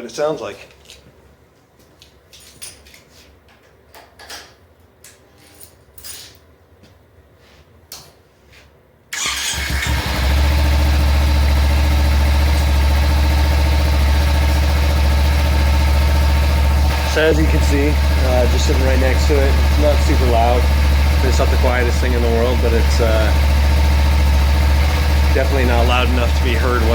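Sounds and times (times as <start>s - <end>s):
motorcycle engine starting and idling: 9.1s - 26.9s.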